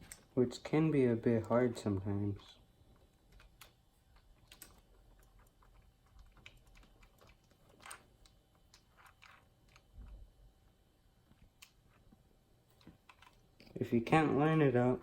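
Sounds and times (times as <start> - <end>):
small parts clicking and tapping: 3.2 - 10.3, 12.7 - 13.8.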